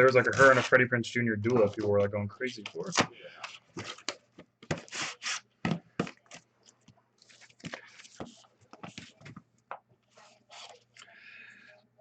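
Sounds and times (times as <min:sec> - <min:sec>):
cards and packaging rustling: 0:00.0 - 0:09.5.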